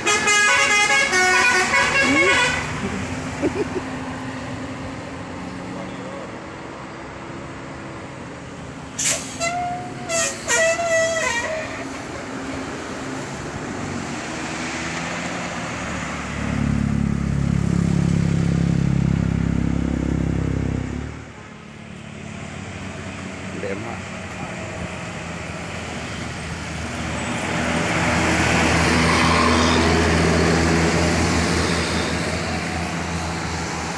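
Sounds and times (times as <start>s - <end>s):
bus horn tune: 0.0s - 2.8s, 9.4s - 11.9s
loud deep horn: 0.0s - 2.8s
traffic noise: 0.0s - 33.9s.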